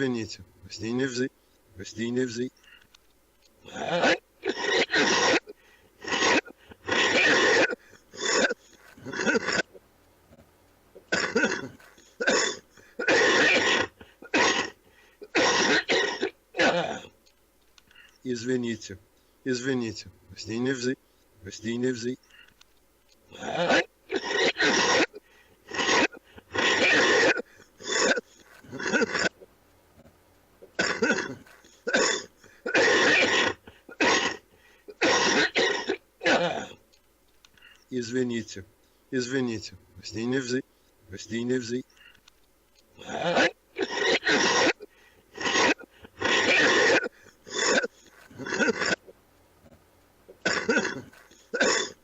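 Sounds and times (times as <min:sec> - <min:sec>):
man coughing: 0:03.6 - 0:09.6, 0:11.1 - 0:17.1, 0:23.3 - 0:29.4, 0:30.7 - 0:36.8, 0:43.0 - 0:49.0, 0:50.4 - 0:52.0.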